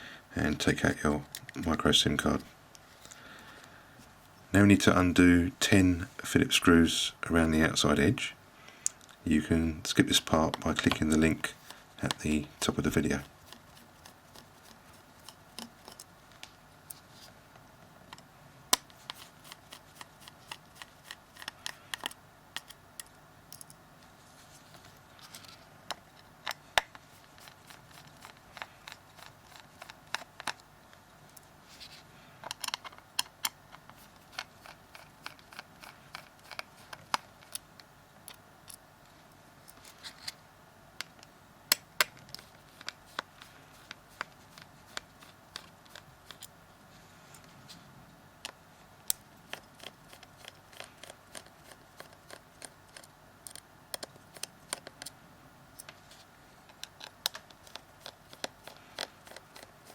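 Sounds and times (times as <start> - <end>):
screwdriver clicking on plastic: 48.4 - 55.2, 56.7 - 59.9.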